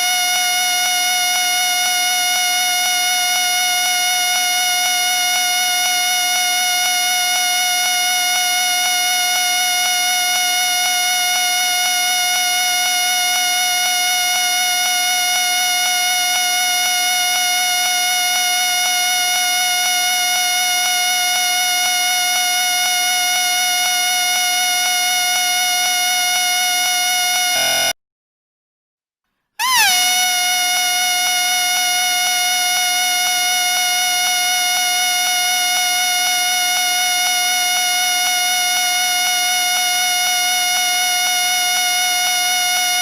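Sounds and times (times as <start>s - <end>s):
shrill whistle tone: 27.3s - 28.0s, 29.6s - 32.4s.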